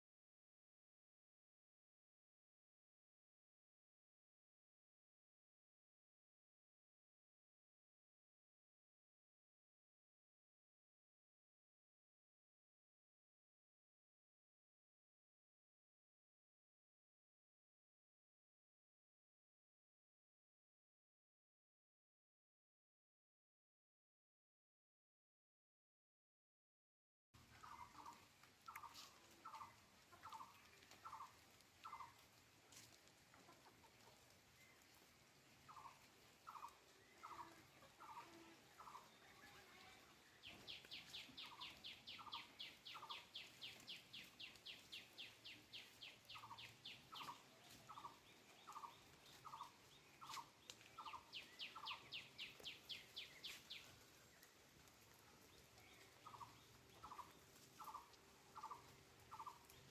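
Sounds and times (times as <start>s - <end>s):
faint animal calls: 27.5s - 32.3s, 35.6s - 40.1s, 55.1s - 59.8s.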